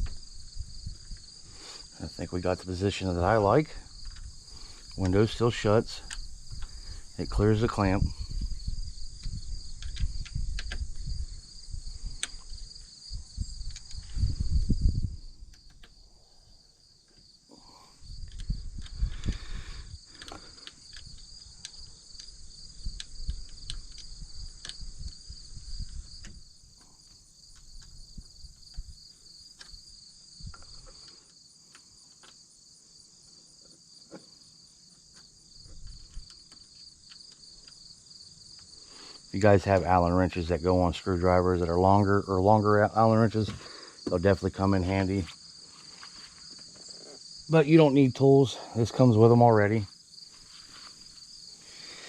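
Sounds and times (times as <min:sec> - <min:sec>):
insects chirping: 0:00.0 - 0:52.0
sharp clicks and knocks: 0:09.2 - 0:11.0.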